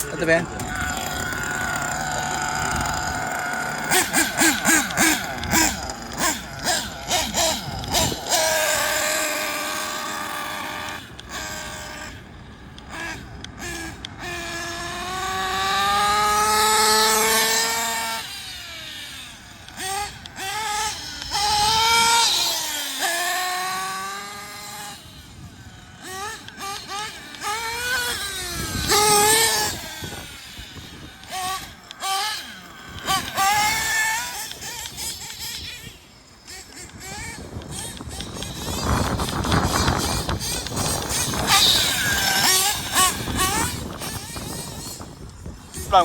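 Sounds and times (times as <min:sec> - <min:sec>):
small nitro engine revving: 0:00.0 - 0:46.0.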